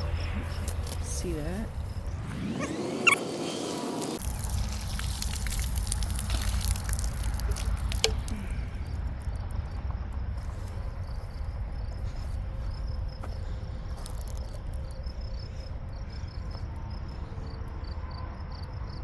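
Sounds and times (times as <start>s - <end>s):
crickets chirping: 0.0s - 19.0s
water spurting from outdoor spigot: 3.8s - 9.4s.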